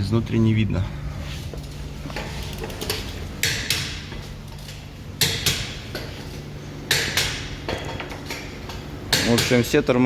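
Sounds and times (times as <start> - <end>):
low workshop hum: 0.0 - 10.0
sharp metallic knocks: 3.4 - 4.2, 5.2 - 6.2, 6.8 - 9.8.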